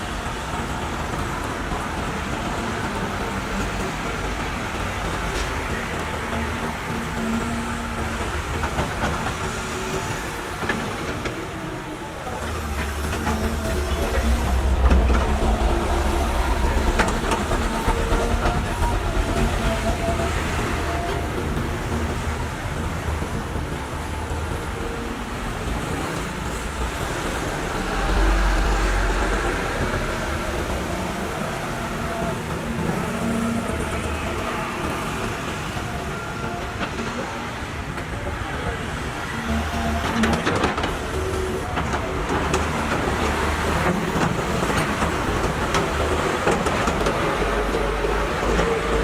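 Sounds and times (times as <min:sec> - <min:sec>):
diesel construction machinery running: 0:00.0 - 0:49.0
deep rumble: 0:12.6 - 0:22.1, 0:26.4 - 0:31.7.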